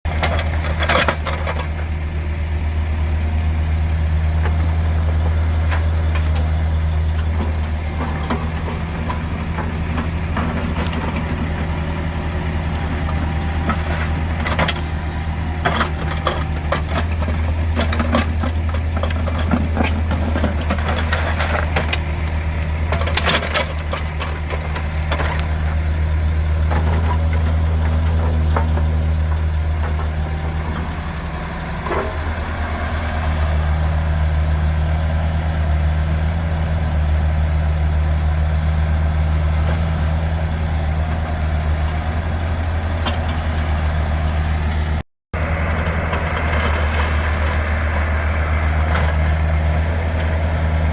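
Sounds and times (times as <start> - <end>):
excavator diesel engine running: 0.0 - 50.9
knocks and clanks: 0.1 - 1.9, 4.4 - 12.0, 15.5 - 25.8, 26.5 - 31.2.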